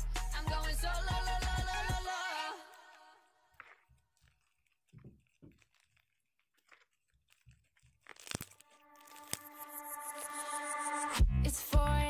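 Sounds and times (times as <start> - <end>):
music: 0.0 - 2.6, 8.6 - 12.0
slime squishing: 2.3 - 9.5.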